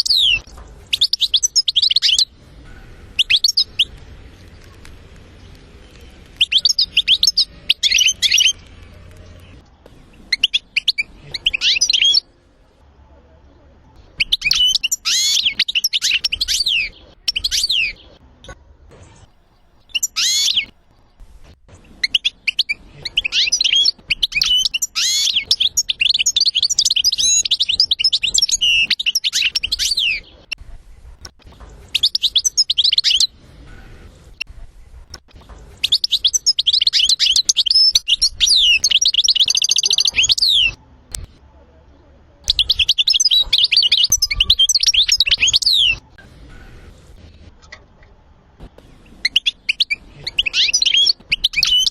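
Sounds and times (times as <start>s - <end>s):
goldfinch twittering song: 0.0s - 2.3s, 3.2s - 4.6s, 5.4s - 12.3s, 22.0s - 30.6s, 31.2s - 33.3s, 35.2s - 40.8s, 42.5s - 46.0s, 49.1s - 51.9s.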